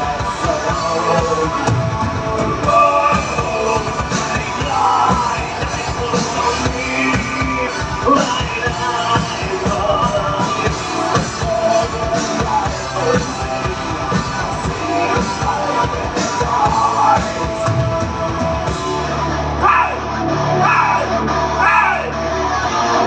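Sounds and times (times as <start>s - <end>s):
drums: 0.0s - 23.0s
electric guitars: 0.0s - 23.0s
person singing: 0.0s - 23.0s.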